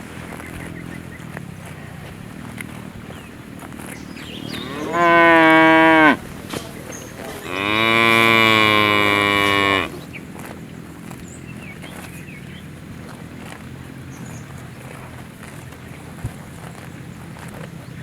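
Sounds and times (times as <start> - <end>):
cow mooing: 4.4 - 6.3, 7.4 - 10.1.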